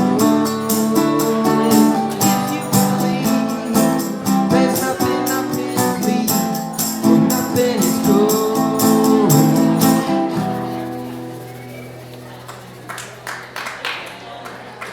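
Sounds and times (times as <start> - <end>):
strummed acoustic guitar: 0.0 - 12.4.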